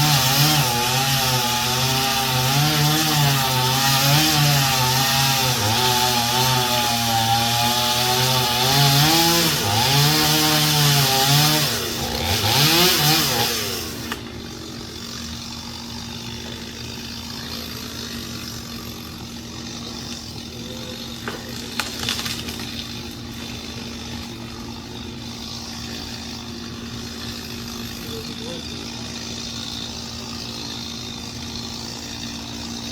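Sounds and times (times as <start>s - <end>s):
chainsaw cutting wood: 0.0s - 32.9s.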